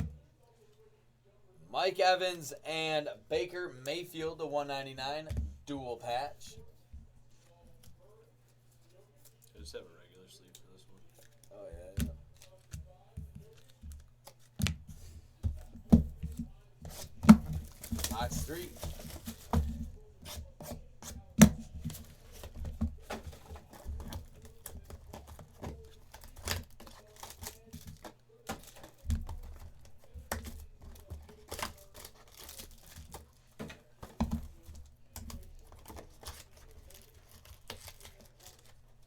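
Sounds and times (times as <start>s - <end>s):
plastic wrappers crinkling and tearing: 16.9s - 19.6s, 21.9s - 39.0s.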